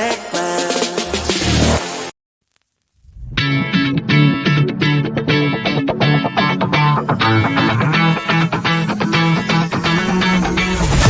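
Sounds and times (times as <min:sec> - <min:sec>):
plucked guitar music with bass: 0:03.4 - 0:10.7.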